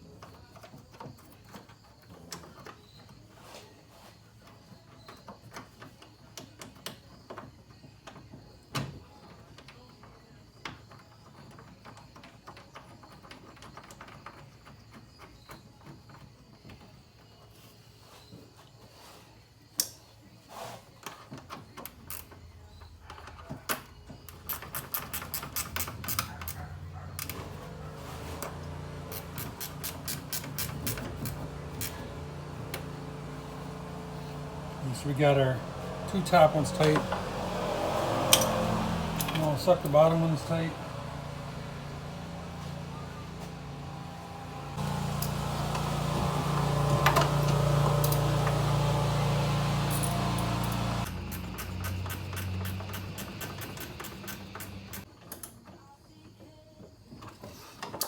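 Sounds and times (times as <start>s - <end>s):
fan shroud and bolts knocking: 23.2s - 55.1s
ratchet wrench clicking: 24.3s - 26.6s, 29.1s - 32.1s, 50.7s - 55.5s.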